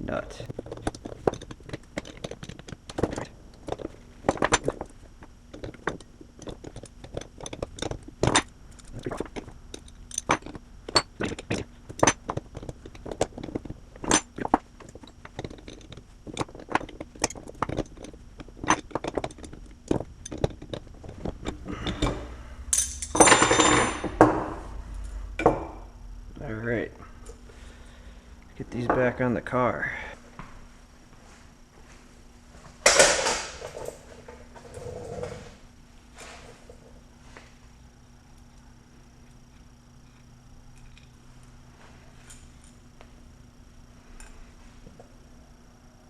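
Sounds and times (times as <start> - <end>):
metal clatter: 0.5 - 24.5.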